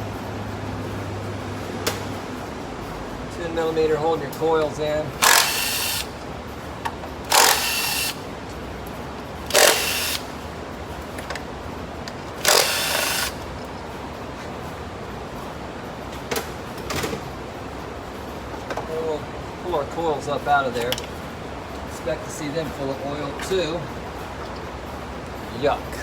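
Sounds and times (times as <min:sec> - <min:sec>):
cordless power tool spinning: 0:05.2 - 0:06.2, 0:07.3 - 0:08.2, 0:09.5 - 0:10.3, 0:12.3 - 0:13.4.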